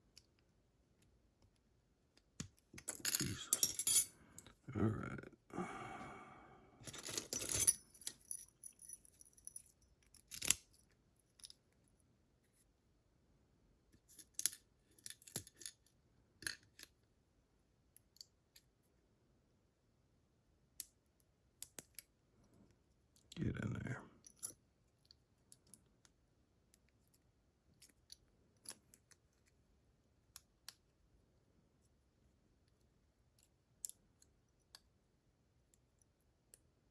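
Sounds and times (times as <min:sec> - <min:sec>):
small metal parts clicking: 0:14.1 - 0:17.0.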